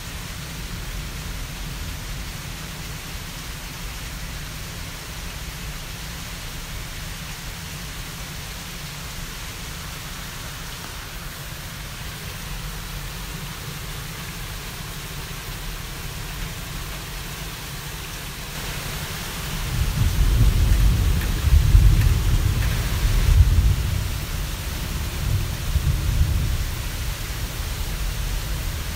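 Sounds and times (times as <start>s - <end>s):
rain hissing: 0.0s - 28.9s
thunder rolling: 19.5s - 27.5s.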